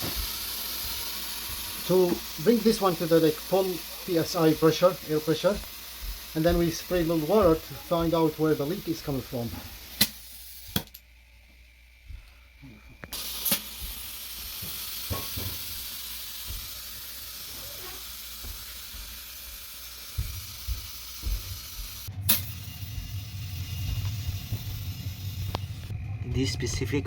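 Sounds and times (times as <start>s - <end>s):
air hissing into a tire: 0.0s - 10.9s, 13.1s - 25.9s
low hum: 21.2s - 27.0s.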